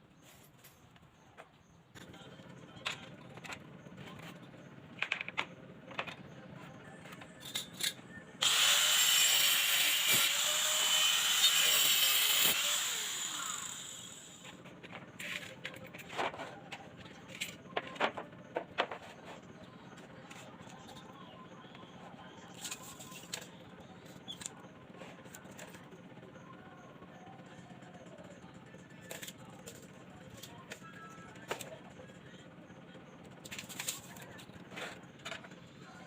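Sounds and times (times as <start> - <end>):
knocks and clicks handling wood: 2.8 - 6.4, 14.6 - 19.5
handheld power tool running: 8.4 - 14.6.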